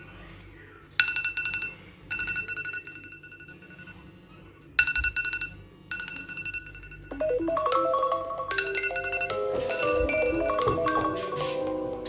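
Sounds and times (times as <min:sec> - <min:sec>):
marimba-like alarm melody: 0:04.8 - 0:12.0.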